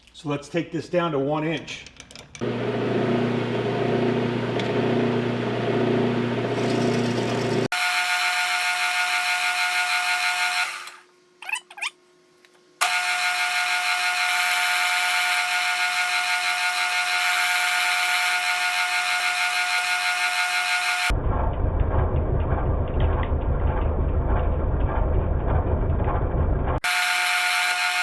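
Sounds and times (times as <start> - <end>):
metal lathe whining: 6.4 - 11.0, 12.8 - 21.1, 26.9 - 28.0.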